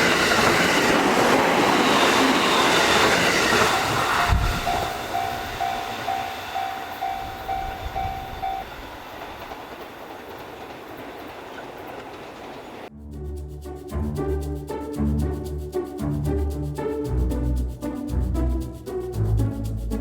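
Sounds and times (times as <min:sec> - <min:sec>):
passing train noise: 0:00.0 - 0:20.0
level crossing warning bell: 0:02.7 - 0:10.2
music: 0:12.9 - 0:20.0.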